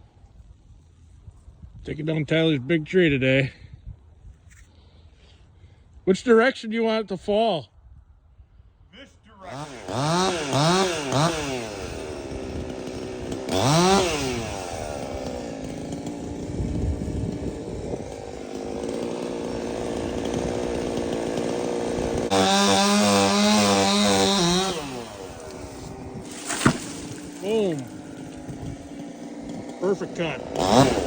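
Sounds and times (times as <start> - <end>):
chainsaw cutting tree trunk: 9.5 - 31.0.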